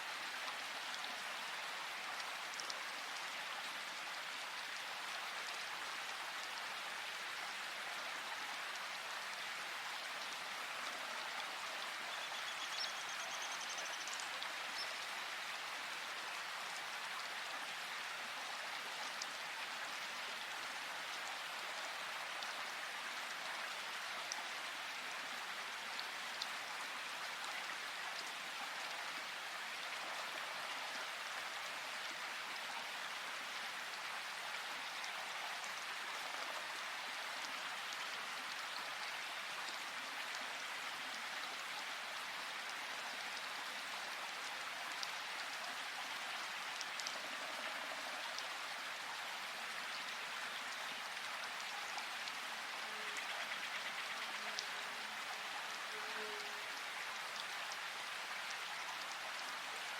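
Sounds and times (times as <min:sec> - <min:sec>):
steady rain hiss: 0:00.0 - 0:59.9
faint high-pitched call: 0:55.9 - 0:56.7.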